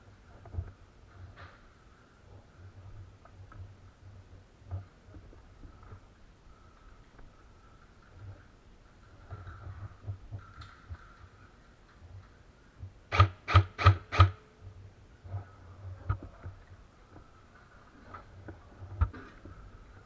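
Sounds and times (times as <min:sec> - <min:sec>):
airsoft rifle shots: 0:13.1 - 0:14.4.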